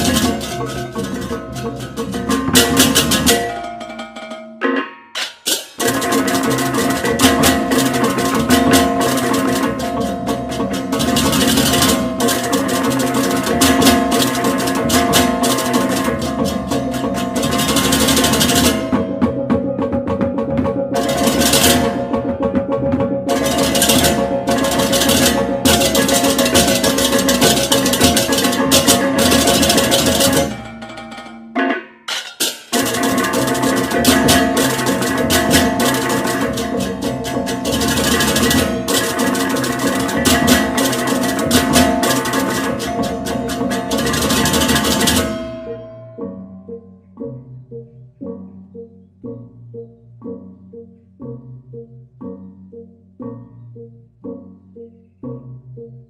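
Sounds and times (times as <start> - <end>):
ringing pitched tones: 0.0 - 5.2, 5.8 - 19.9, 20.8 - 55.1
drums: 0.0 - 45.9
gamelan percussion music: 0.0 - 48.9
cymbal-like clashing: 23.3 - 45.8.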